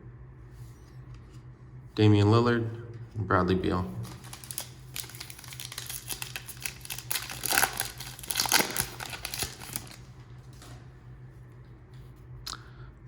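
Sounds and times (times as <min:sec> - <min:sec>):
foil wrapper crinkling: 0:04.0 - 0:10.2.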